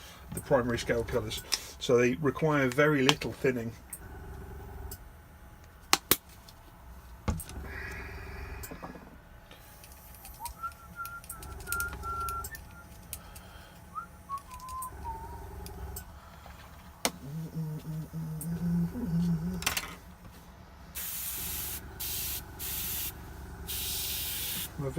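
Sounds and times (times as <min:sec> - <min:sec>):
airbrush compressor humming: 0:00.0 - 0:05.7, 0:07.3 - 0:20.2, 0:20.9 - 0:24.9
thin wavering whistle tone: 0:10.4 - 0:12.9, 0:13.9 - 0:15.6
faint air hiss: 0:21.0 - 0:24.9.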